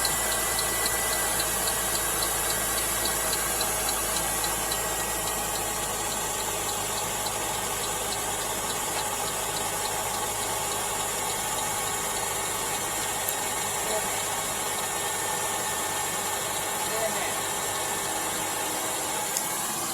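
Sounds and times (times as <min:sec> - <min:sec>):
light quick ticking: 0:00.0 - 0:13.6
car engine idling: 0:00.0 - 0:19.9.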